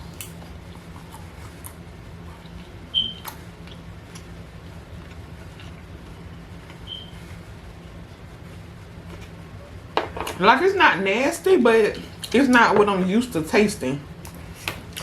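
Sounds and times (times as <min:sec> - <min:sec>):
quiet chewing: 0:00.0 - 0:06.8
steady low hum: 0:00.0 - 0:15.0.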